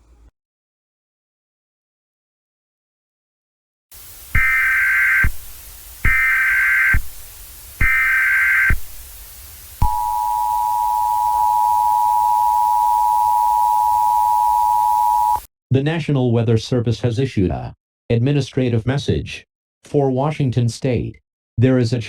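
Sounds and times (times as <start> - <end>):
digital data tone bursts: 4.2 - 15.5
two-tone attention signal: 9.8 - 15.5.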